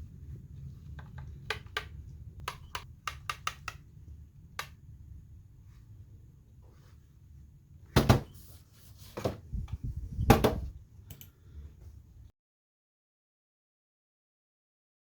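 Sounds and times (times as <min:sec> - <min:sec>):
objects knocking and rustling: 0:08.0 - 0:08.5.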